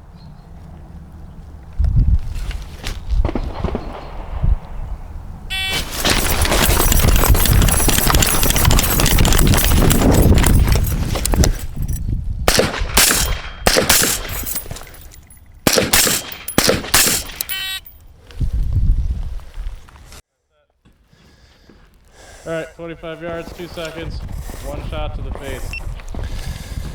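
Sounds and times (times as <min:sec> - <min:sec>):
shot timer beep: 0:05.5 - 0:06.3, 0:17.2 - 0:17.9
running noise: 0:05.5 - 0:12.0
suppressed rifle shots: 0:12.5 - 0:14.4, 0:15.6 - 0:17.8.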